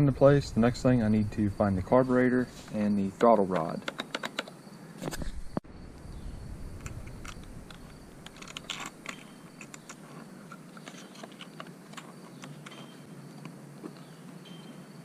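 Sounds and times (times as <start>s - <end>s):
small parts clicking and rattling: 3.5s - 4.6s, 6.8s - 13.0s.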